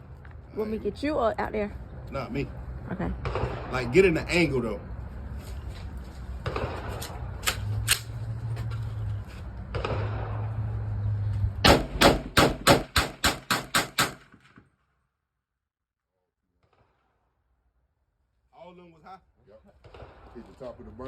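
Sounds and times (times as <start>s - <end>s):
gunshots: 3.2s - 4.5s, 6.4s - 8.1s, 9.6s - 10.8s, 11.6s - 14.7s, 19.8s - 20.8s.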